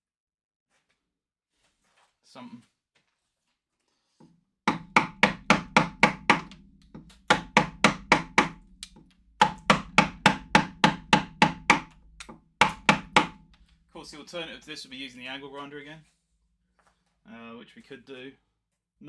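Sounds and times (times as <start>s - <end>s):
chisel striking wood: 4.7s - 13.7s.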